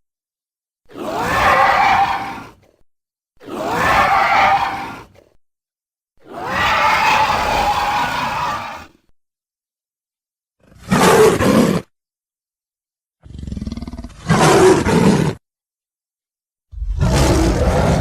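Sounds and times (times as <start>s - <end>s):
dinosaur roars: 6.3s - 9.0s, 13.2s - 15.4s, 16.7s - 18.0s
low growl: 16.7s - 18.0s.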